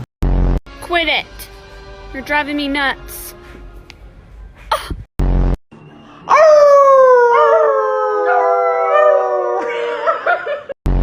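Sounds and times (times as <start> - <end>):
dog howling: 6.3 - 10.1.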